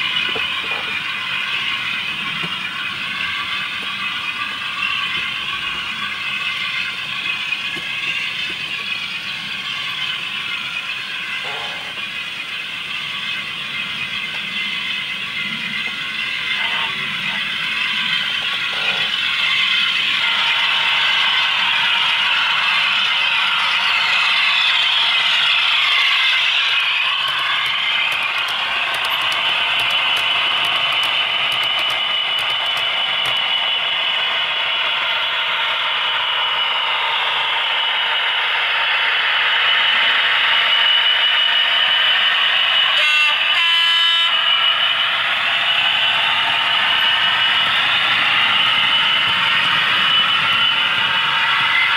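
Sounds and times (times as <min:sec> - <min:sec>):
model train rattling on track: 0:00.0 - 0:38.5, 0:39.5 - 0:51.9
speaker hiss and motor whine: 0:00.0 - 0:43.6, 0:44.2 - 0:51.9
model locomotive two-tone horn: 0:10.9 - 0:12.1, 0:15.3 - 0:21.3, 0:42.8 - 0:44.8.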